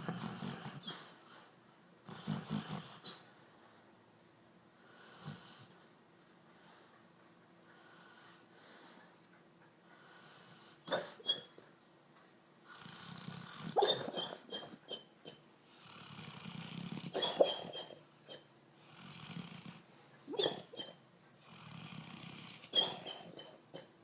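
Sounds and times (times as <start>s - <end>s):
quiet breathing: 4.7s - 10.9s.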